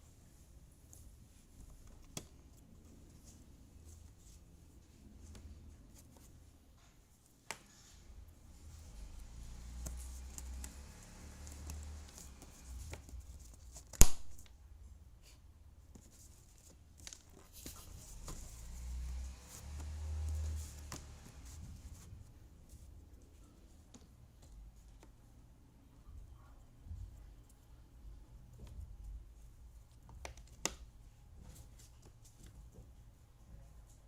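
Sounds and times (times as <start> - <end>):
soft rustling: 0.0 - 25.5.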